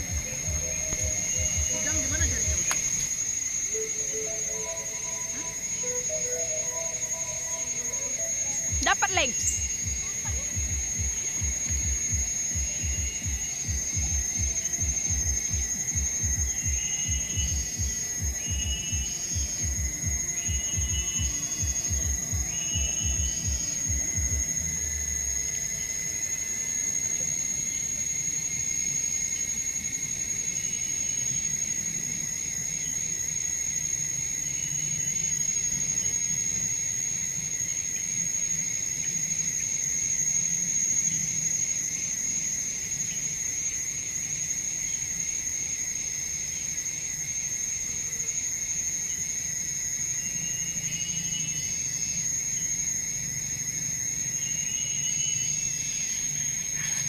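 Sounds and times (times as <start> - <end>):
insects droning: 0.0 - 57.0
low steady insect tone: 0.0 - 57.0
short insect chirps: 0.0 - 57.0.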